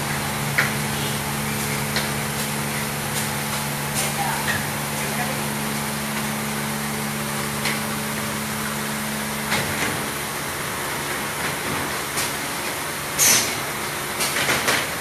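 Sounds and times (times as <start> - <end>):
machine humming: 0.0 - 11.5.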